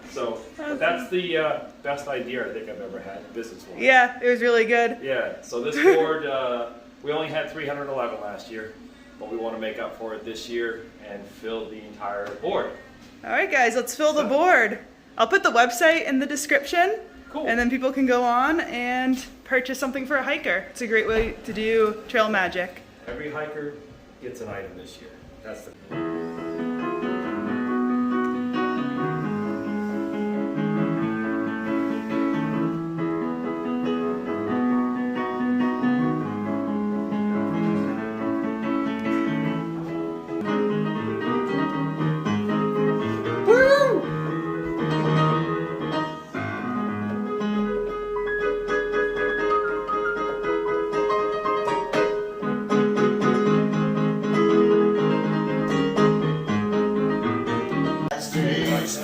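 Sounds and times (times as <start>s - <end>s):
piano music: 25.8s - 59.0s.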